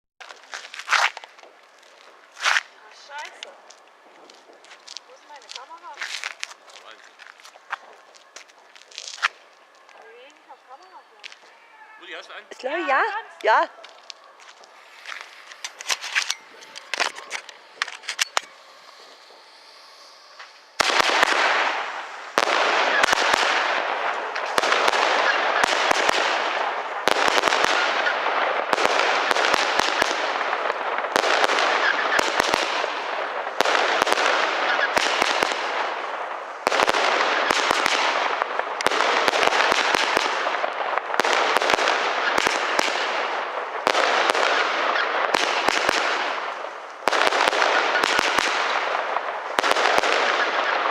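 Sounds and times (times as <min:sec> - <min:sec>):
fireworks battery shots: 0:12.2 - 0:50.9.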